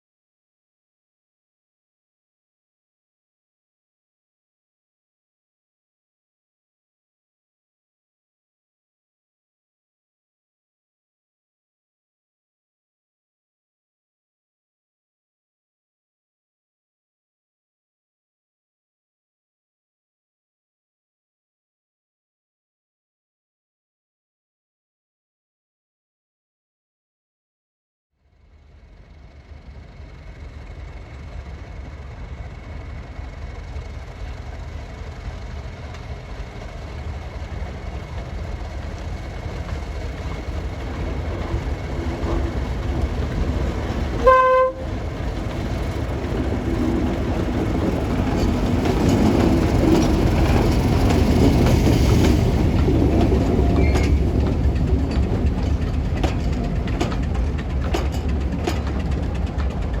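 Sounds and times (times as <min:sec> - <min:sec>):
diesel locomotive engine rumble: 0:28.3 - 1:00.0
wheels clicking over rail joints: 0:33.0 - 1:00.0
train horn blast: 0:44.2 - 0:45.0.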